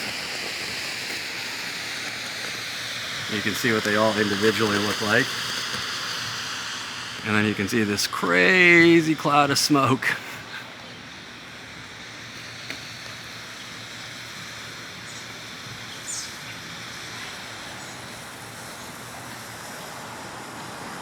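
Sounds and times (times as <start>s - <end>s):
smoke bombs hissing: 0.0s - 21.0s.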